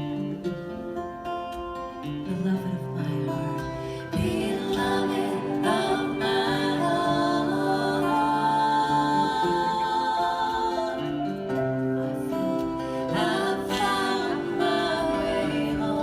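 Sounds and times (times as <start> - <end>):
person singing: 2.2 - 16.0
devotional chant music: 2.4 - 16.0.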